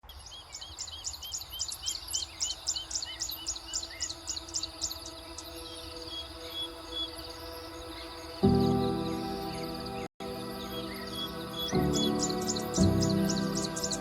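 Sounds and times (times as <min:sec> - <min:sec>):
songbird chirping: 0:00.0 - 0:14.0
soft music with held tones: 0:03.3 - 0:14.0.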